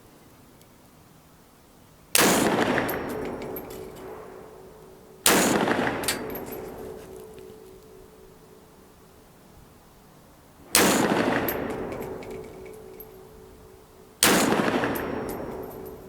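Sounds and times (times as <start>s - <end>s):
rifle shots echoing: 2.2s - 7.6s, 10.7s - 13.6s, 14.2s - 16.0s.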